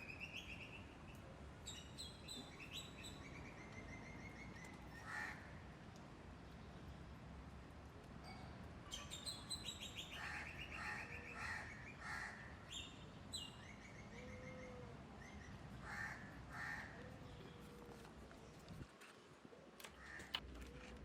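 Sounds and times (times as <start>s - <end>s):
crows cawing: 5.0s - 5.6s, 10.2s - 12.5s, 15.8s - 17.2s, 19.9s - 20.4s
small birds chirping: 8.3s - 11.9s.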